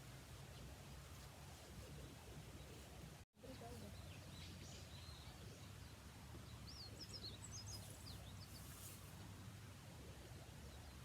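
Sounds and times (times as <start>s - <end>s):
faint birds chirping: 1.6s - 9.4s.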